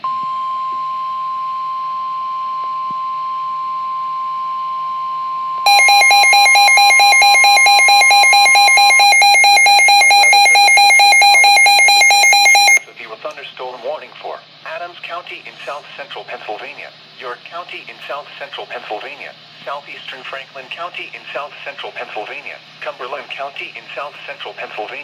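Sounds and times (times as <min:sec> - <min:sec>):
rapid warbling alarm beep: 0:05.7 - 0:12.8
steady alert tone: 0:05.7 - 0:12.8.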